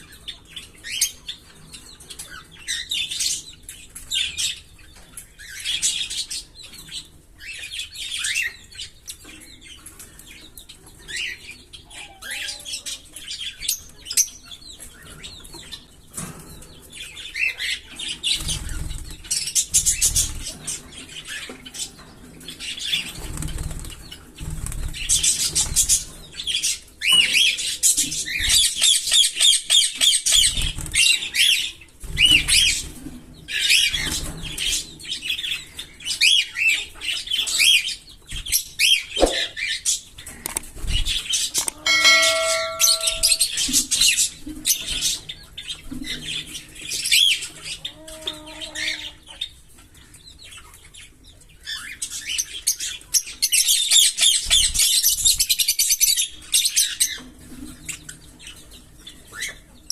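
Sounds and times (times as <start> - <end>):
lovebirds chirping: 35.6 - 43.8
bird trills: 41.6 - 43.8.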